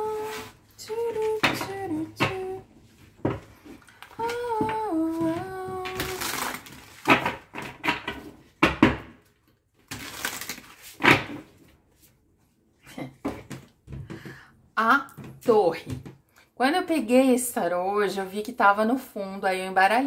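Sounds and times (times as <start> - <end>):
woman humming: 4.2 - 6.2
cards being shuffled: 10.0 - 11.1.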